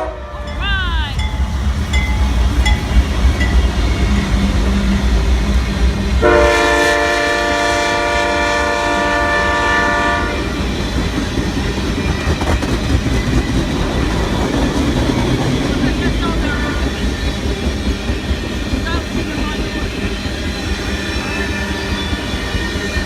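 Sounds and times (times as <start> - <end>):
locomotive air horn: 0.0 - 0.6, 6.2 - 10.6
train rumbling past: 0.0 - 23.0.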